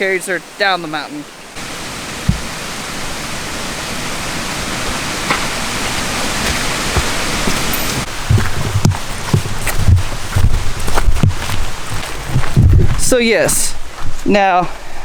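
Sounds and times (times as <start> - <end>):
running water rushing: 0.0 - 14.6
low thumps: 2.2 - 2.7, 6.4 - 13.4.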